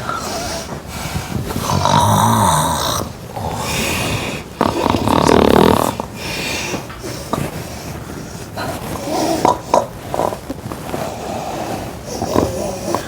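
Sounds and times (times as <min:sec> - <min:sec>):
person snoring loudly: 0:01.6 - 0:06.2.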